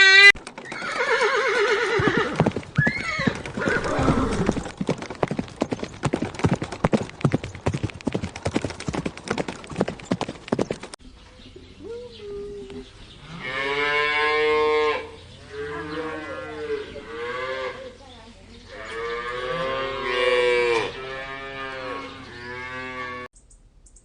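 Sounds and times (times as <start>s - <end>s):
horse whinnying: 0.0s - 4.7s
hooves clip-clopping on hard ground: 0.3s - 11.0s.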